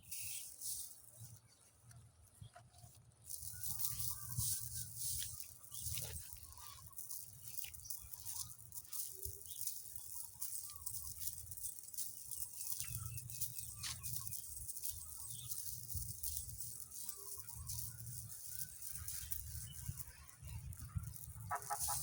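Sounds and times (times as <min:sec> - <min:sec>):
steady high hiss: 0:00.0 - 0:01.5.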